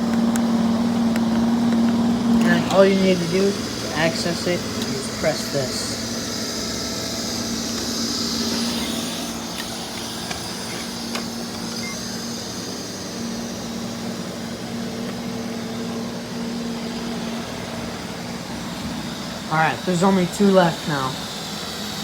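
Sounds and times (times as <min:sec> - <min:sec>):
robot vacuum motor hum: 0:00.0 - 0:22.0.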